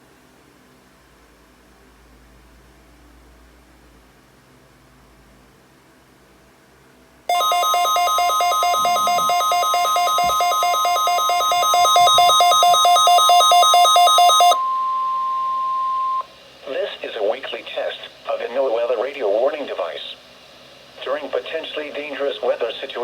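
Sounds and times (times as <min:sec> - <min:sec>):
fast pulsing beep: 0:07.3 - 0:16.3
steady high alarm tone: 0:07.3 - 0:16.4.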